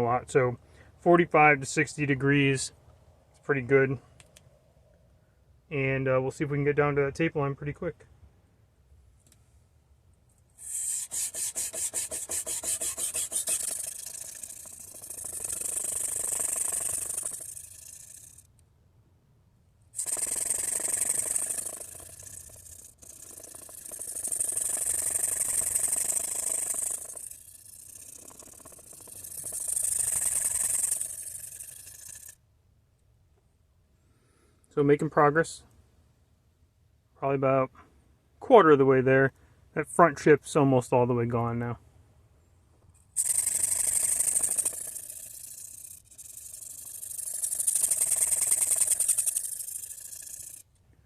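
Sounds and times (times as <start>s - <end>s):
knife grinding on whetstone: 10.6s - 14.7s.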